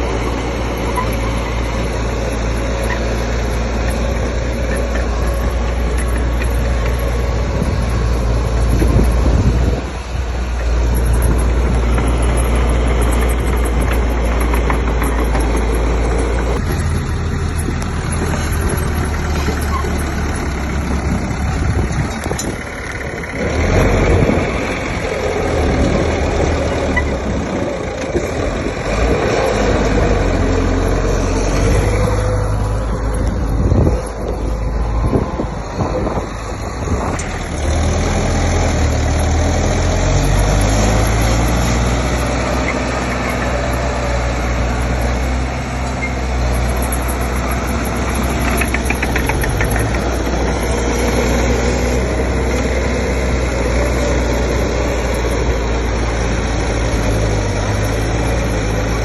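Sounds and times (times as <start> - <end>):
diesel engine of heavy machinery: 0.0 - 59.0.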